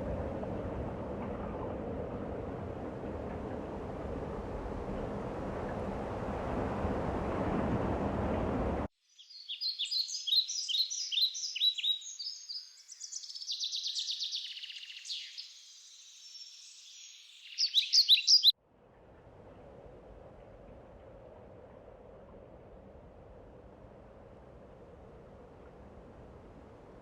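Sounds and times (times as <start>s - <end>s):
songbirds singing: 9.1s - 18.5s.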